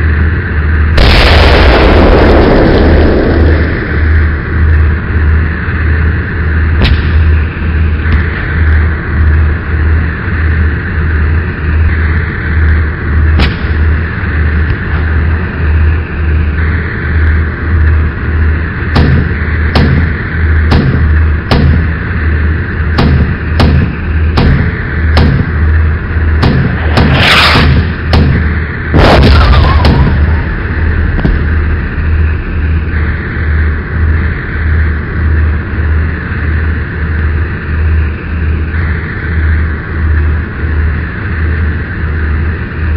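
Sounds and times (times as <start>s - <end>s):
pulsing ship engine drone: 0.0s - 42.9s
heavy cannon blasts: 0.8s - 9.4s, 13.2s - 16.0s, 18.8s - 35.6s
sharp gunshots: 0.9s - 4.5s, 6.8s - 7.4s, 13.4s - 14.0s, 18.9s - 21.9s, 22.9s - 25.7s, 26.3s - 32.6s.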